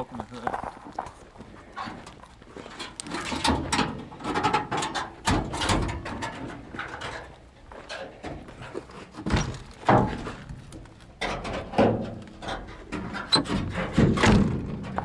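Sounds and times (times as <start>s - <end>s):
metal clicks and clunks: 2.8s - 8.6s, 9.2s - 15.0s.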